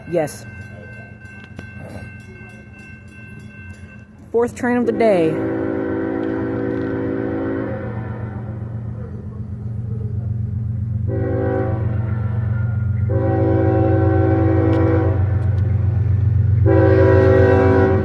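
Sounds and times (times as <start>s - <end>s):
diesel locomotive engines droning: 0.0s - 18.0s
train horn blasts: 4.8s - 8.8s, 11.0s - 15.6s, 16.6s - 18.0s.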